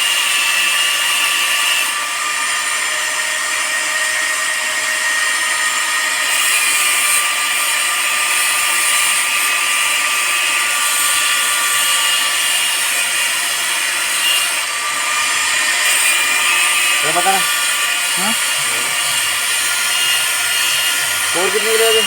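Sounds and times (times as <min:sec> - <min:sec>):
electric cutter high-pitched whine: 0:05.6 - 0:22.0.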